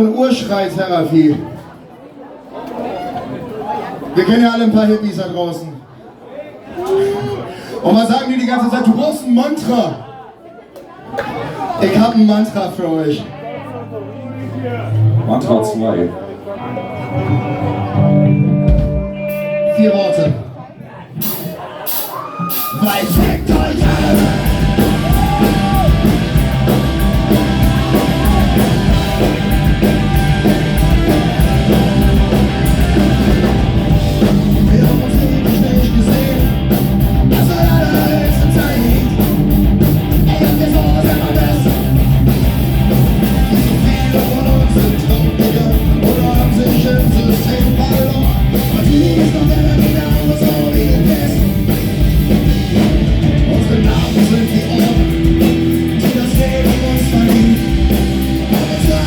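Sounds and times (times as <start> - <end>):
distorted electric guitars: 16.4 - 20.6, 22.4 - 59.0
punk rock band playing live: 16.8 - 20.4, 21.2 - 59.0
driving drum beat: 21.2 - 59.0.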